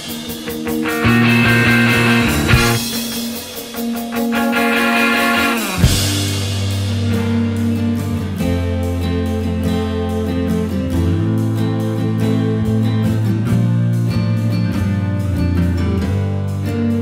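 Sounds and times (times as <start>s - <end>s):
rock music with electric guitar: 0.0s - 17.0s.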